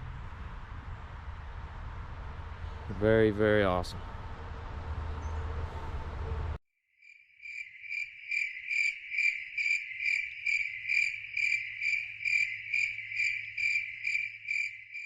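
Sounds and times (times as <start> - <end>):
cricket chirping: 7.0 - 15.0.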